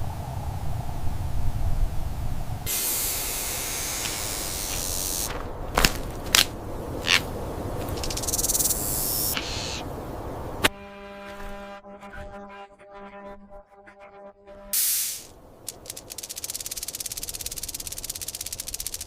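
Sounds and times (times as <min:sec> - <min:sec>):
rattlesnake rattling buzz: 0:02.7 - 0:09.9, 0:14.8 - 0:19.0
sharp clicks: 0:15.1 - 0:19.0.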